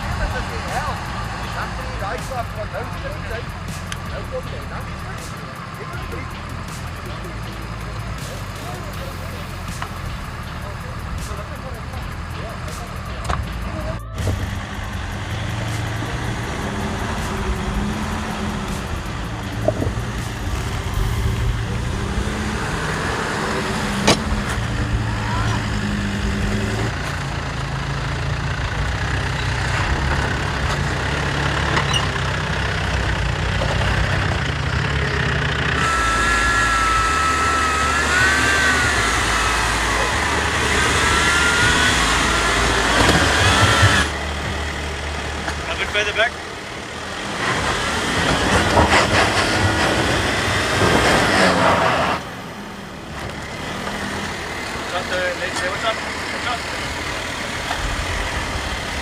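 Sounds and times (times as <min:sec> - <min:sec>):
vehicle engine at low revs: 0:00.0 - 0:59.0
wavering high thin whine: 0:35.7 - 0:46.0.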